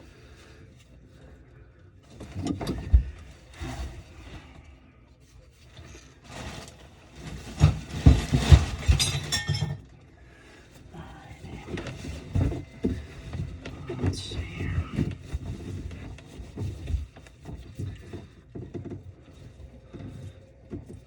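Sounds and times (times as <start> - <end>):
hard objects clinking and knocking: 8.1 - 9.9.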